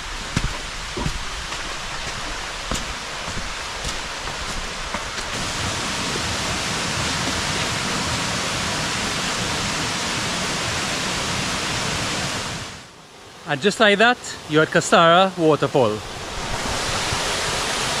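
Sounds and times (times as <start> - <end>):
river and waterfall rushing: 0.0 - 18.0.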